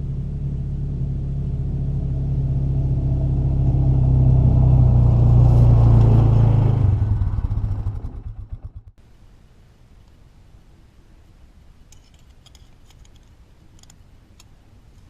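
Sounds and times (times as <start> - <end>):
vehicle engine running: 0.0 - 9.0.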